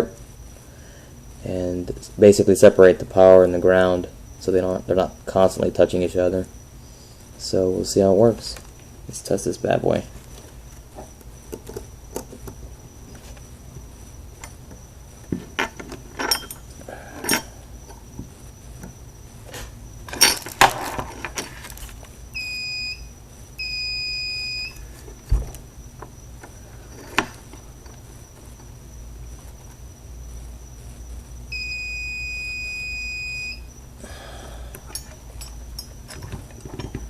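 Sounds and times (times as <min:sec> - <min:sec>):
clicks and knocks of handling: 0:10.3 - 0:13.4, 0:34.7 - 0:37.0
multimeter beeping: 0:22.3 - 0:24.8, 0:31.5 - 0:33.7.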